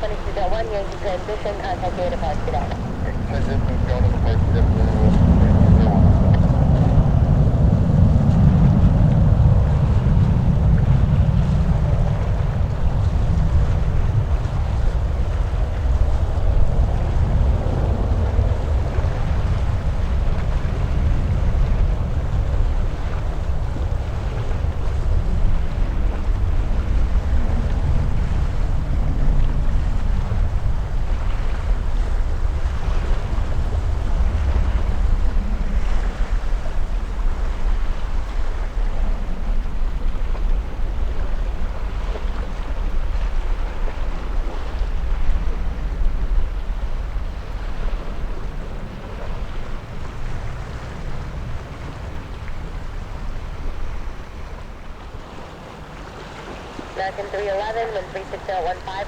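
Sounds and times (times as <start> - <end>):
jet aircraft noise: 0.0 - 41.9, 56.8 - 59.0
wind buffeting microphone: 0.0 - 59.0.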